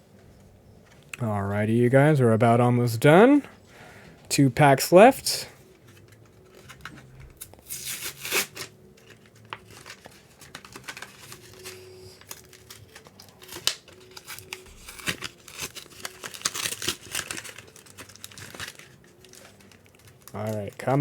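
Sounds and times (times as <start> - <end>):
plastic packaging crinkling and tearing: 5.9 - 21.0.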